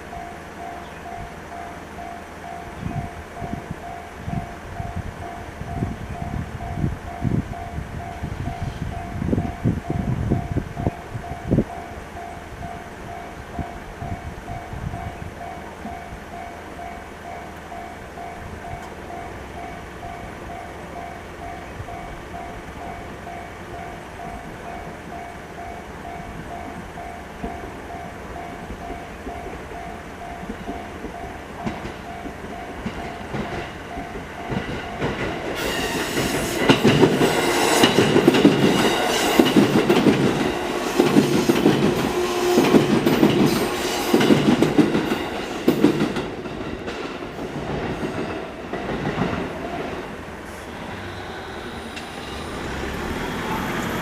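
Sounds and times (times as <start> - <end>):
train wheels clattering over rails: 18.2 - 51.2.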